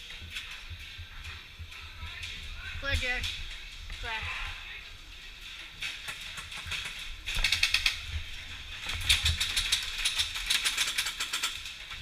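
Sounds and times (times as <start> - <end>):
rapid sharp mechanical clicks: 5.8 - 12.0.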